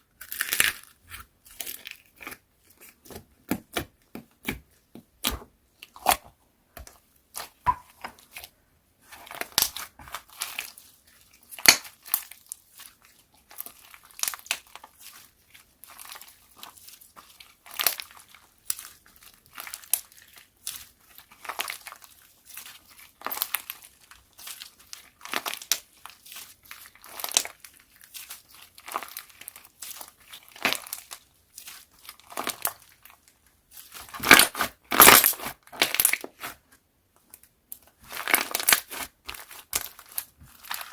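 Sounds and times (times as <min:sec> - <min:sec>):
slime squeezed crackling and popping: 0:00.2 - 0:02.4, 0:38.1 - 0:40.9.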